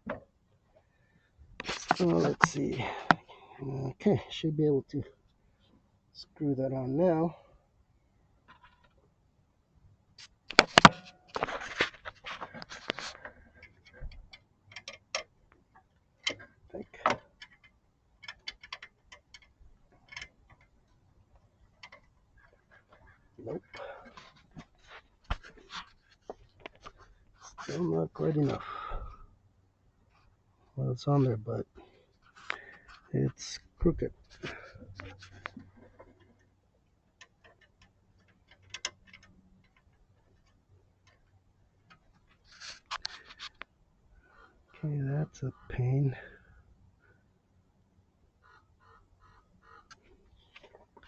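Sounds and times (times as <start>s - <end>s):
small clicks and taps of tools: 10.5s - 23.1s, 34.3s - 43.7s.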